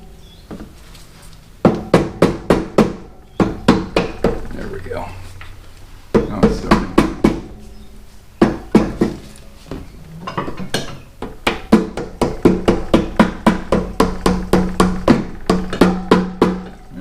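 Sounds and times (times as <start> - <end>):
low metallic ring: 3.0 - 8.4.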